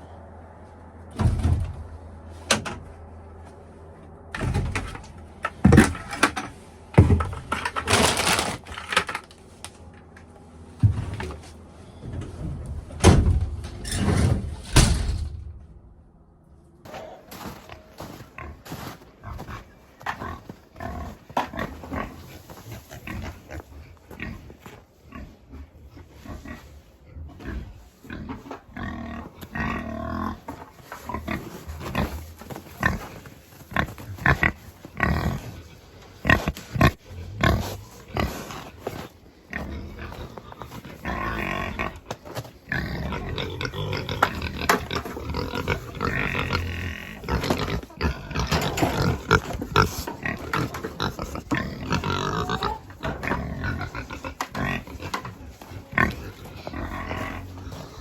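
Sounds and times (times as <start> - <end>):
pigs grunting and squealing: 19.2 - 58.0.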